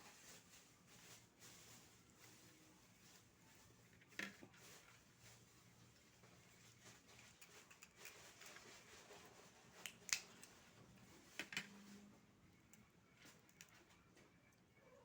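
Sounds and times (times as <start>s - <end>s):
faint handling noises: 0.0s - 15.0s.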